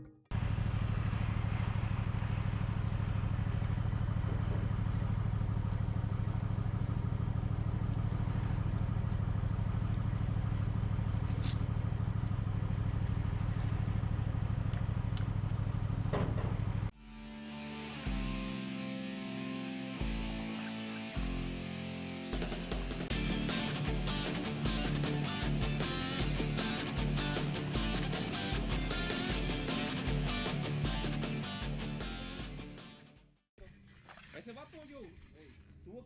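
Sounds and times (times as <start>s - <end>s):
music: 0.0s - 0.3s, 17.0s - 33.4s
engine running steadily: 0.3s - 16.9s, 22.8s - 32.6s.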